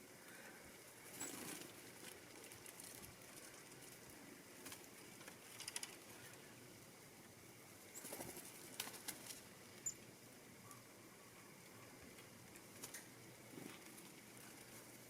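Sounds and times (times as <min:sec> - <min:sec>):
bird wings fluttering: 0:01.1 - 0:06.3, 0:07.9 - 0:09.5.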